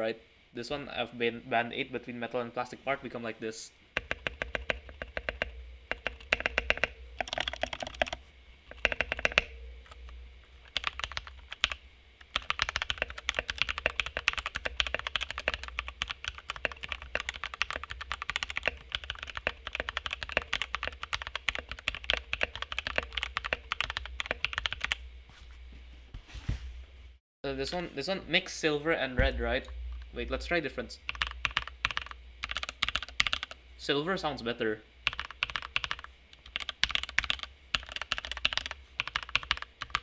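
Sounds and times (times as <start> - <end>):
typing on mechanical keyboard: 4.0 - 9.5, 10.7 - 25.0, 31.1 - 33.6, 35.1 - 40.0.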